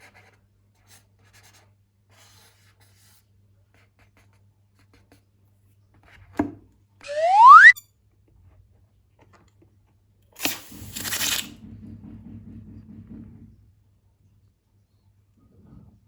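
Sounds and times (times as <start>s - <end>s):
air squealing from balloon neck: 7.1s - 7.8s.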